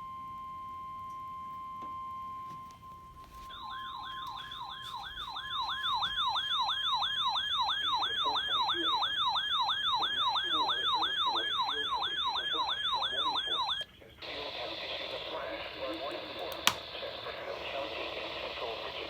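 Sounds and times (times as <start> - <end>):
steady warning tone: 0.0 - 16.6
siren-like yelp: 3.0 - 13.8.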